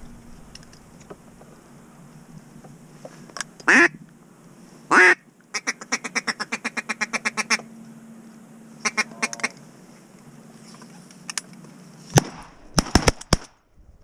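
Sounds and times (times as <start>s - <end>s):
duck quacking: 3.7s - 4.0s, 4.9s - 7.6s, 8.8s - 9.6s.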